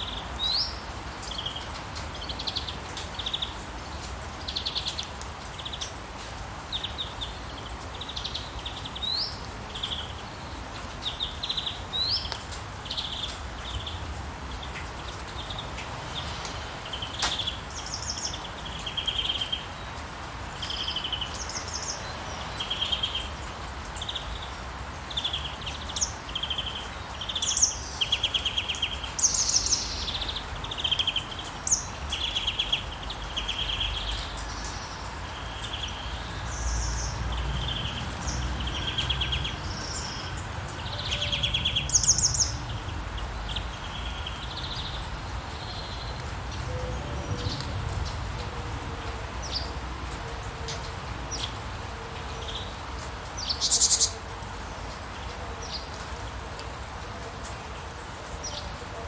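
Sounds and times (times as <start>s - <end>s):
rain falling: 0.0s - 59.0s
songbirds chirping: 0.0s - 59.0s
low rumble: 45.9s - 50.1s.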